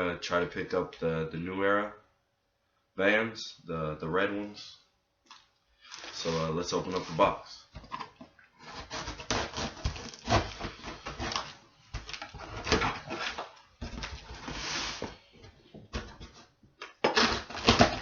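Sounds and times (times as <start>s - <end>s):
cardboard box rustling and scraping: 8.6s - 16.6s.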